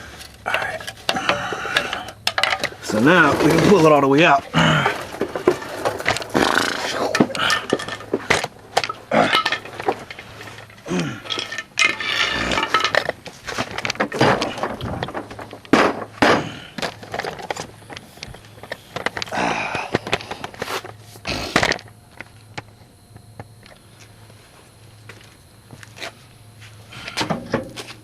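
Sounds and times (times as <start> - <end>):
metal clinking and scraping: 0.0 - 16.2
person grunting: 4.5 - 5.0, 10.8 - 11.3.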